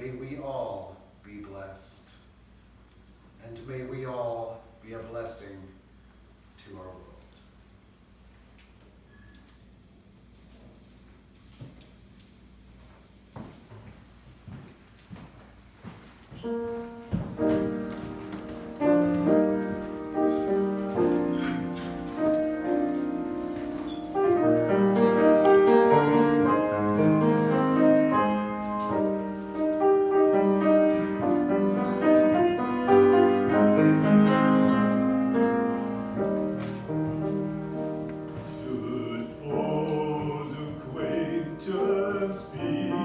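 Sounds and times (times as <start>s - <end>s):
piano music: 16.4s - 43.0s.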